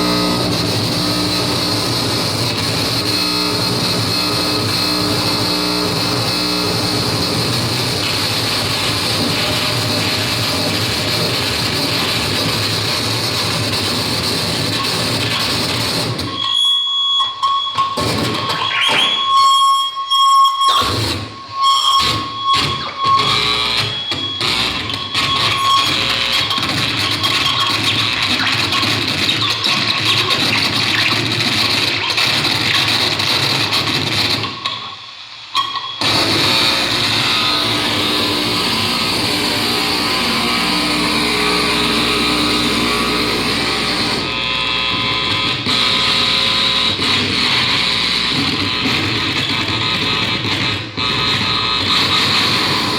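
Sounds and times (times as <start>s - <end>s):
harsh noise electronic music: 0.0s - 52.9s
shrill steady electronic tone: 14.6s - 31.2s, 34.4s - 48.5s.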